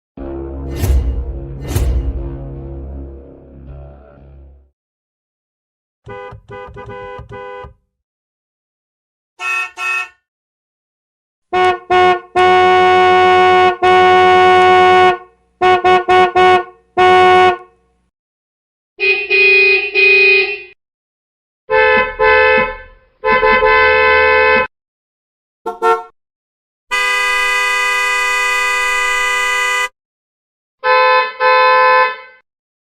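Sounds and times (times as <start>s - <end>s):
car horns honking: 6.0s - 7.8s, 9.4s - 10.2s, 11.5s - 17.6s, 19.0s - 20.8s, 21.7s - 24.7s, 25.7s - 26.1s, 26.9s - 29.9s, 30.8s - 32.4s.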